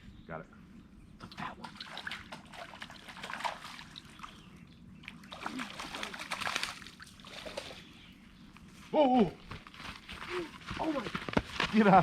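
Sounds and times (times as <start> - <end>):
fish thrashing in water: 5.1 - 7.8.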